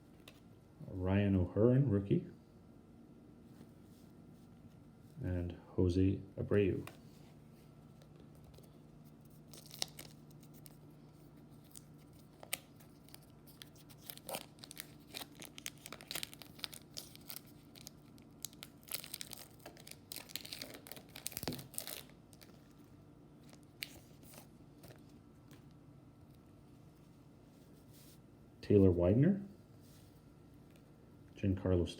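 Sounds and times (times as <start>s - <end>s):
foil wrapper crinkling and tearing: 8.5s - 22.7s.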